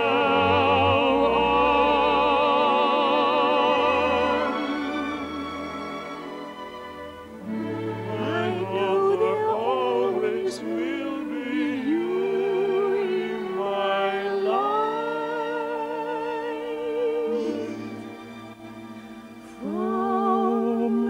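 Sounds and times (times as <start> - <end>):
slow orchestral ballad music: 0.0 - 21.0.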